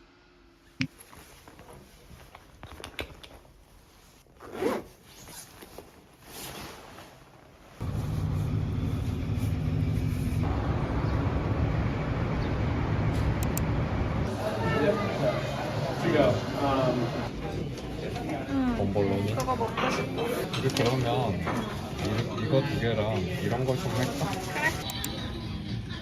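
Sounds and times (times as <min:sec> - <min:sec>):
zip-like scrape: 0:04.4 - 0:05.6
street traffic rumble: 0:07.8 - 0:17.9.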